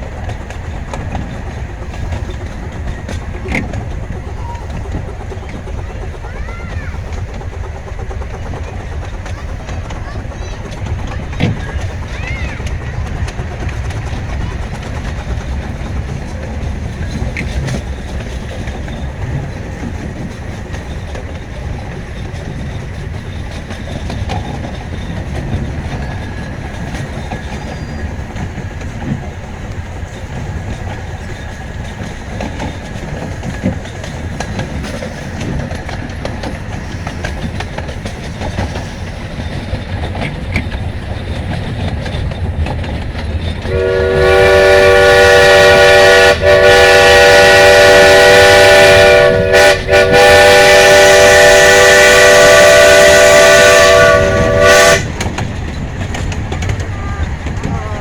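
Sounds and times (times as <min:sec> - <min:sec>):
miniature steam train rumble: 0:00.0 - 0:58.0
steam locomotive whistle: 0:43.6 - 0:55.3.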